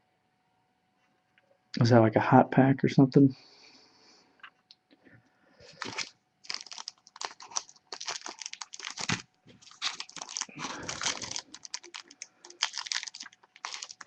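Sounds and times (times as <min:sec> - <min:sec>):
foil wrappers crinkling: 0:05.6 - 0:14.0.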